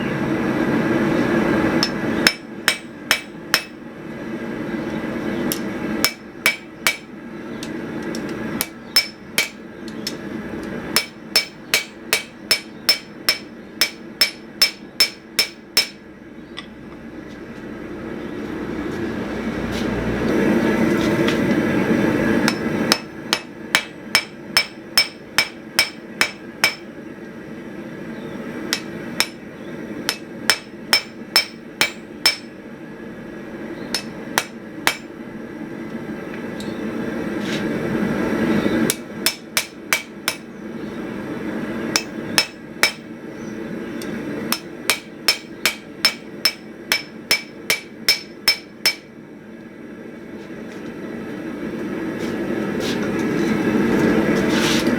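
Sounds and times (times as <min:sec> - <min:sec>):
hammer ringing on anvil: 0:01.8 - 0:03.8, 0:08.6 - 0:09.6, 0:11.0 - 0:16.0, 0:22.5 - 0:26.9, 0:30.1 - 0:32.5, 0:33.9 - 0:35.1, 0:42.0 - 0:43.0, 0:44.5 - 0:49.1.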